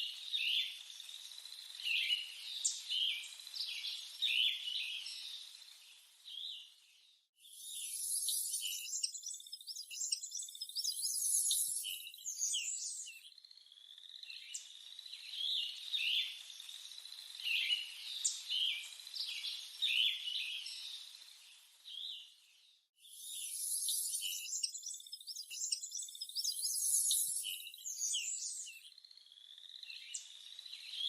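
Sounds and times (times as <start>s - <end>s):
bird high chirping calls: 7.6s - 13.3s, 23.1s - 28.9s.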